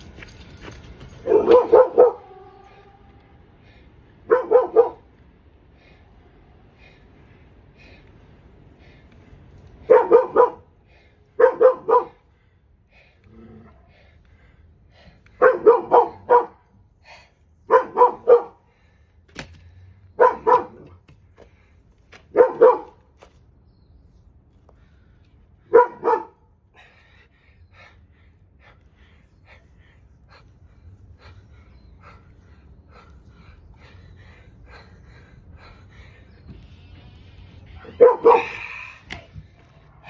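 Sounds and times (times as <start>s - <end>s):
dog barking: 1.2s - 2.4s, 4.2s - 5.1s, 9.8s - 10.7s, 11.4s - 12.2s, 15.4s - 16.6s, 17.7s - 18.6s, 20.2s - 21.0s, 22.3s - 23.0s, 25.7s - 26.4s, 37.8s - 38.6s.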